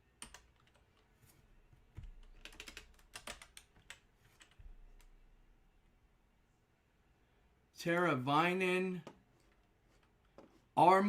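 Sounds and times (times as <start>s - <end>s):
typing on keyboard: 0.2s - 1.0s, 2.0s - 4.6s.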